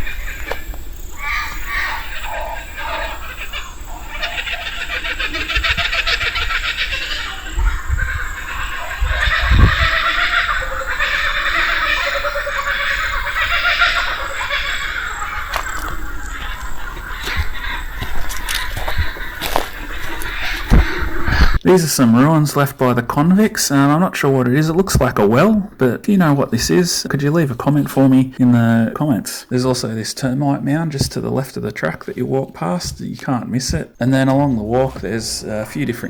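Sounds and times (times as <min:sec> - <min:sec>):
birds calling rapidly: 0:00.0 - 0:36.0.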